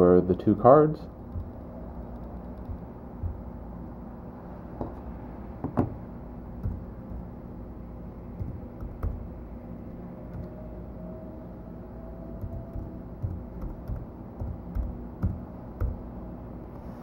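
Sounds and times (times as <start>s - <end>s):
steady low hum: 0.0s - 17.0s
keyboard keystrokes and clicks: 1.3s - 3.4s, 12.4s - 16.0s.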